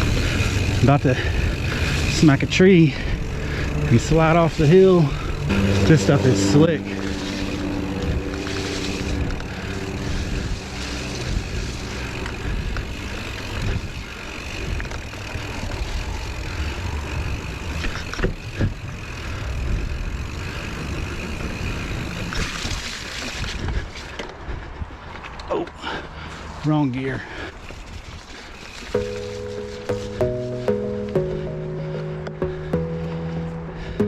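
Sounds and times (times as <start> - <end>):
wind rumble on microphone: 0.0 - 25.5
bike tyres rolling over mud and rocks: 0.0 - 30.6.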